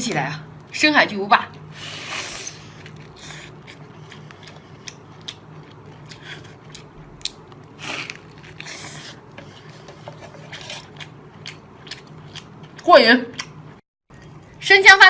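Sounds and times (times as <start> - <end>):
chewing crunchy shell: 2.6 - 14.5.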